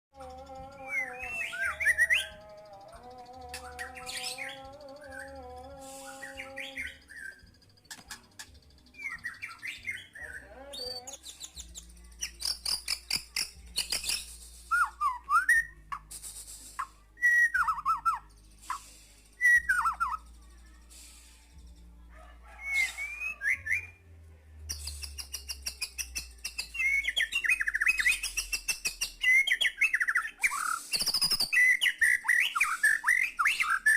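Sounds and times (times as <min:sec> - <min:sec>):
bird singing whistled phrases: 0:00.8 - 0:02.4, 0:17.2 - 0:18.8, 0:19.4 - 0:20.2, 0:24.7 - 0:33.9.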